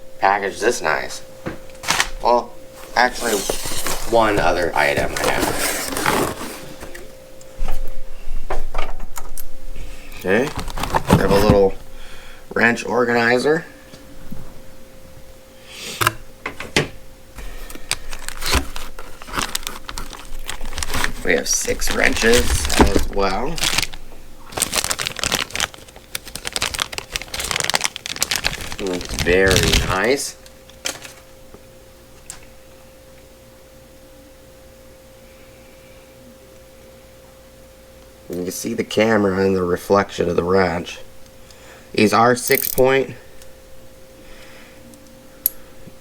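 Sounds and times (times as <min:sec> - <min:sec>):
steady hum: 0:00.0 - 0:46.0
packaging rustling: 0:01.7 - 0:07.1, 0:10.2 - 0:11.8, 0:17.4 - 0:31.3.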